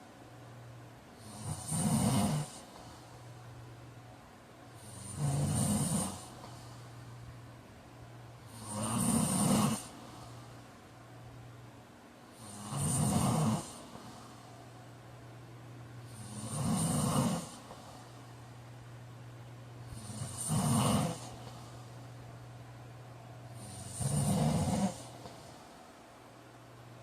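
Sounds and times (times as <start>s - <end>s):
man snoring: 1.2s - 2.9s, 4.8s - 6.7s, 8.4s - 10.4s, 12.4s - 14.2s, 16.0s - 18.0s, 19.9s - 21.7s, 23.5s - 25.5s.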